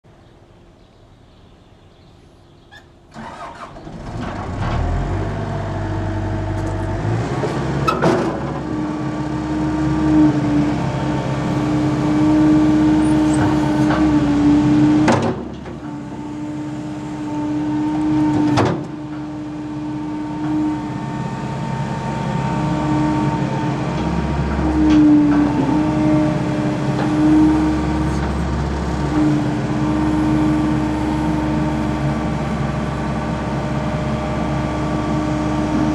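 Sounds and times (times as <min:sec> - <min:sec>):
diesel engine starting and running: 0:02.6 - 0:35.9.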